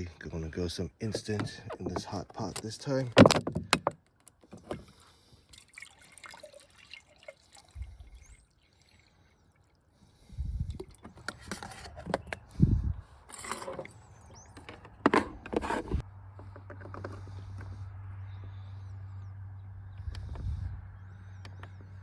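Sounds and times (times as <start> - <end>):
hot water pouring: 5.5 - 9.8.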